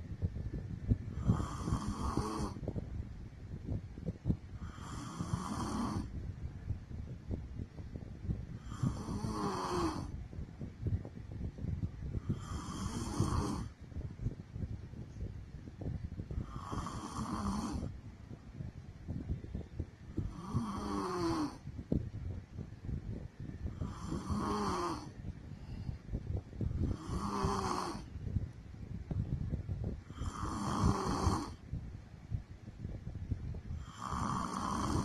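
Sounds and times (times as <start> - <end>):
woman snoring: 1.2 - 2.6, 4.6 - 6.1, 8.6 - 10.1, 12.2 - 13.7, 16.4 - 17.9, 20.2 - 21.6, 23.8 - 25.1, 26.9 - 28.1, 30.1 - 31.6, 33.8 - 35.0.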